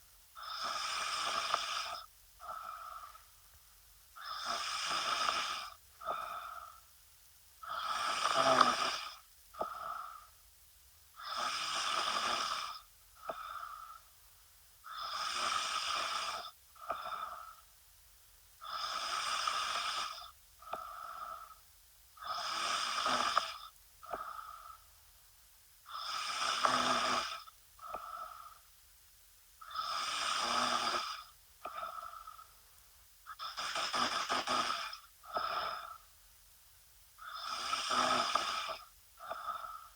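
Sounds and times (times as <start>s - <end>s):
woman snoring: 0.4s - 3.2s, 4.2s - 6.8s, 7.6s - 10.3s, 11.2s - 14.0s, 14.9s - 17.6s, 18.6s - 21.6s, 22.2s - 24.8s, 25.9s - 28.6s, 29.6s - 32.5s, 33.3s - 36.1s, 37.2s - 39.9s.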